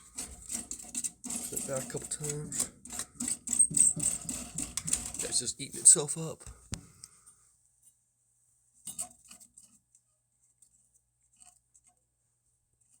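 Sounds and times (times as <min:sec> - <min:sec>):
faint clicks and rattles: 0:00.0 - 0:05.6.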